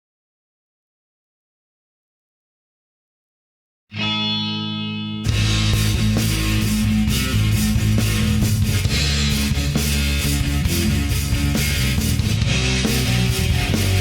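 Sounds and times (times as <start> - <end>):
rock music: 3.9 - 14.0.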